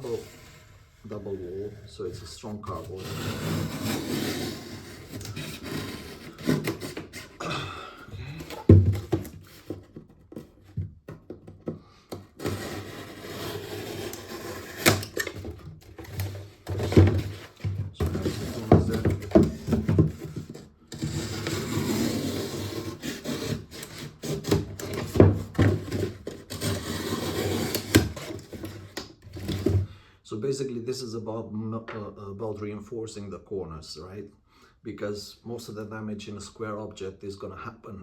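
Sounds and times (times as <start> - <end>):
knife sawing through cardboard: 0.0 - 7.4, 12.2 - 29.9
knocks and thunks: 8.5 - 9.4.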